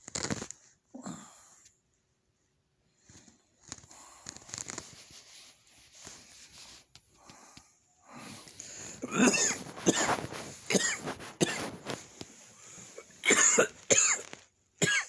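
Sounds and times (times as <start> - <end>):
wheezy breaths: 3.0 - 4.9, 7.1 - 13.2
person coughing: 9.0 - 11.8, 13.0 - 15.0.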